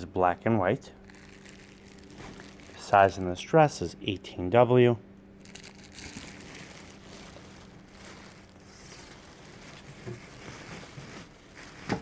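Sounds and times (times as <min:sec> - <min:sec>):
dress fabric rustling: 0:01.1 - 0:03.2, 0:05.4 - 0:12.0.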